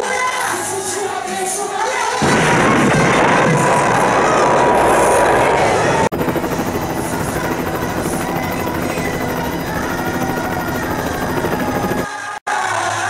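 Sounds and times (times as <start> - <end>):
helicopter rotor pulsing: 3.8 - 12.4
music: 6.2 - 13.0
loud crowd: 12.0 - 13.0.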